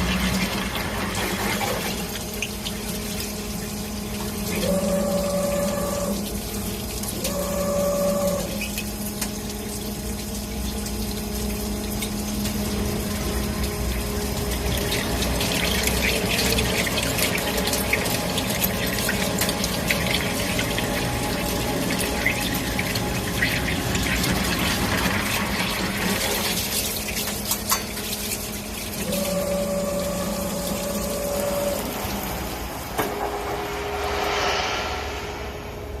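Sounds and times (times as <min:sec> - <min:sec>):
drilling machine hum: 0:04.4 - 0:06.3, 0:07.2 - 0:08.7, 0:29.0 - 0:34.3
high steady tone: 0:33.0 - 0:36.0.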